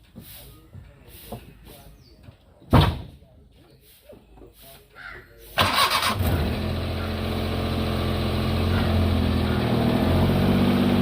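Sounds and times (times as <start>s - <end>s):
car engine idling: 5.6s - 11.0s.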